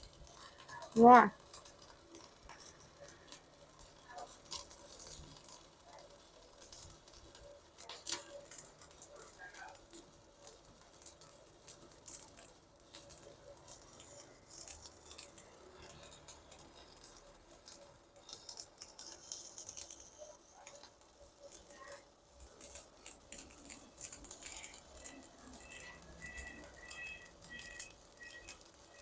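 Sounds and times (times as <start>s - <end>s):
welding arc crackling sizzle: 0.0s - 29.0s.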